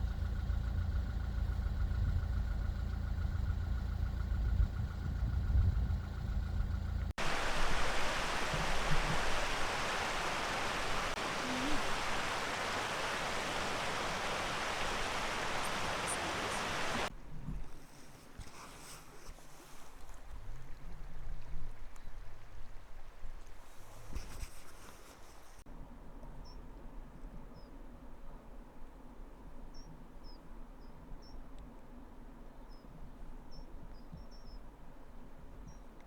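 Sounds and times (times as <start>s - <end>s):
low mechanical hum: 0.0s - 17.8s
even rushing noise: 7.2s - 17.1s.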